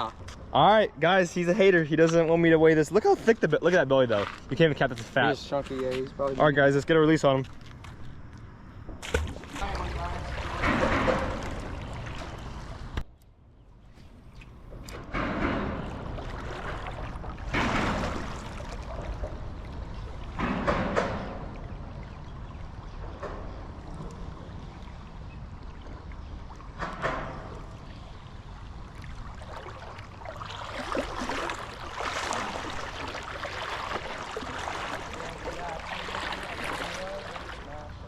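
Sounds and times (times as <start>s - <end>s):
creek water rushing: 29.1s - 37.9s.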